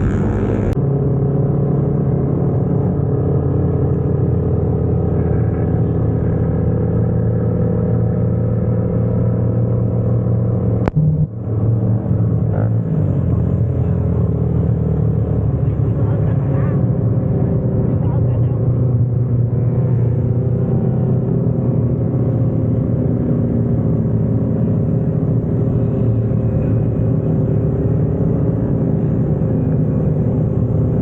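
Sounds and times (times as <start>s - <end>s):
motorcycle engine running: 0.0s - 0.8s.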